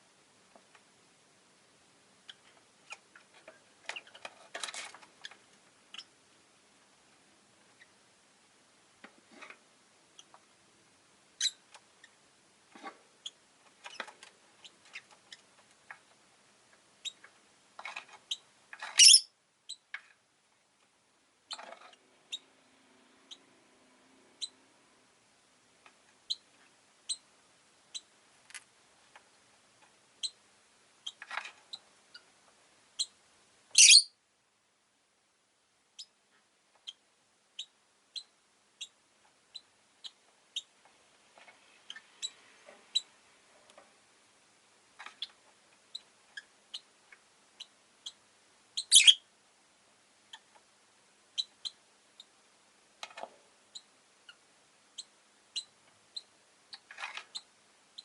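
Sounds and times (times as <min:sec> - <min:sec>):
lovebird chirps and clicks: 0:11.4 - 0:11.6, 0:18.2 - 0:19.8, 0:33.0 - 0:34.1, 0:37.6 - 0:40.7, 0:48.8 - 0:49.2, 0:55.0 - 0:58.0
shrill bird calls: 0:19.0 - 0:19.3, 0:33.8 - 0:34.2, 0:48.8 - 0:49.2.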